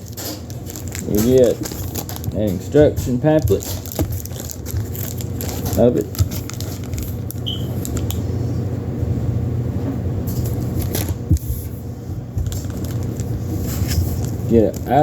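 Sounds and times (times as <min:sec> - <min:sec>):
packaging rustling and clicks: 0:00.0 - 0:08.3, 0:10.4 - 0:11.5, 0:12.4 - 0:15.0
steady low hum: 0:00.0 - 0:15.0
short squeak: 0:07.4 - 0:07.8.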